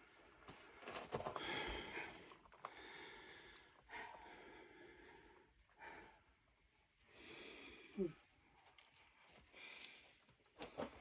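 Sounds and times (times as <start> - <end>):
person breathing softly: 1.3 - 8.4, 9.4 - 10.3.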